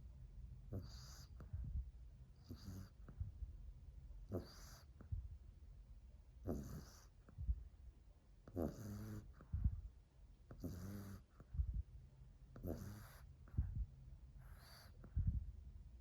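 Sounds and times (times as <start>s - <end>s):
dog snoring loudly: 0.7s - 1.3s, 2.4s - 3.0s, 4.3s - 4.9s, 6.4s - 7.1s, 8.5s - 9.4s, 10.6s - 11.3s, 12.6s - 13.2s, 14.4s - 14.9s.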